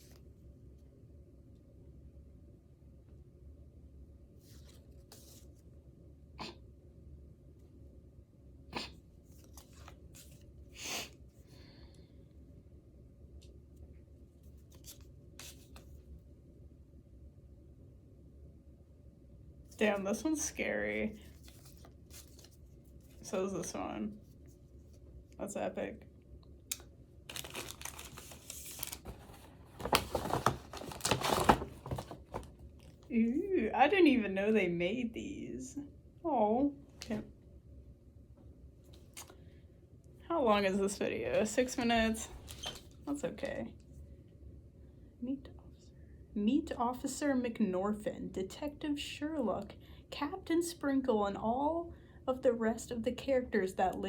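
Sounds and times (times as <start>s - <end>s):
gift wrapping rustling: 21.2s - 23.3s, 27.3s - 33.0s.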